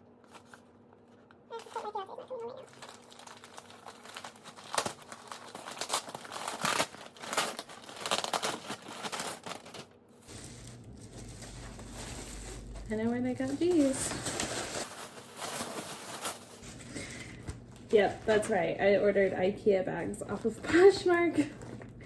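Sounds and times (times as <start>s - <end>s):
packaging crinkling and rustling: 0.2s - 19.4s, 20.0s - 22.0s
package tearing open: 1.6s - 10.8s.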